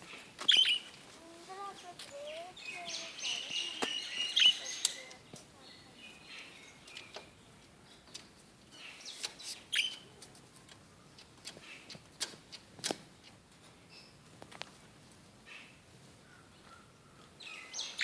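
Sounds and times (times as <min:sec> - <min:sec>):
lovebirds chirping: 0:00.0 - 0:12.0, 0:15.4 - 0:18.0
sharp clicks: 0:04.8 - 0:05.2.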